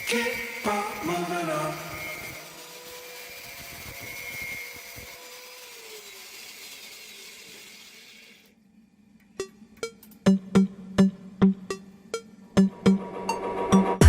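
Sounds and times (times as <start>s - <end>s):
power tool motor spinning down: 0.0s - 8.5s
music beat with drum hits: 9.4s - 11.8s, 12.6s - 14.0s.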